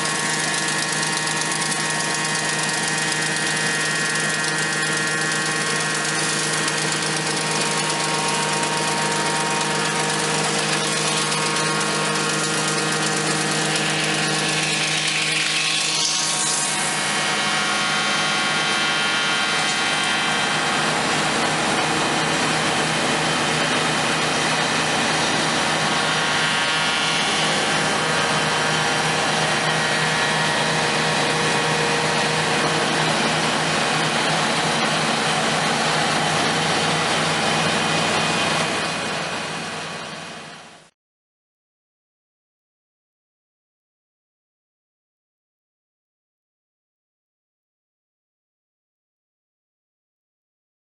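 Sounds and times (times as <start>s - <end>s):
machine whining: 0.0s - 40.4s.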